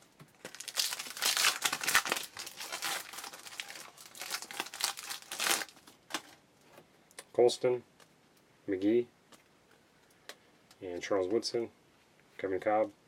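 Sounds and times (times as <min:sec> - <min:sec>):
card pack wrapper tearing and crinkling: 0:00.4 - 0:06.4.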